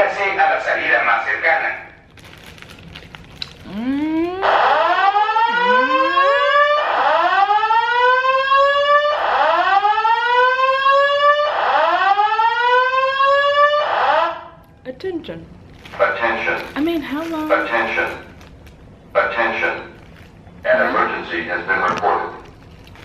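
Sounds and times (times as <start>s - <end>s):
spoken alarm messages: 3.8s - 7.4s, 16.0s - 18.4s, 19.1s - 20.0s, 20.6s - 22.4s
fire alarm whoop tone: 3.8s - 14.5s.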